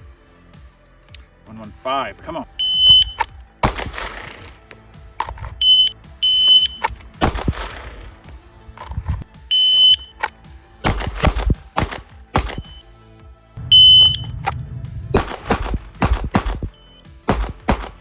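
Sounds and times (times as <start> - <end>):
shot timer beeping: 2.6 - 3.2, 5.6 - 6.9, 9.5 - 10.2, 12.5 - 12.8, 13.7 - 14.4
pistol shots: 2.9 - 4.7, 6.7 - 8.3, 10.2 - 12.8, 15.2 - 18.0.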